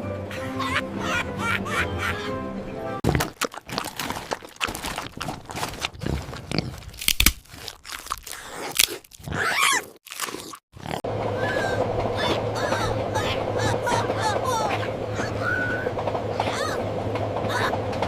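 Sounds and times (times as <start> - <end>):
pig crunching food: 3.0 - 11.1.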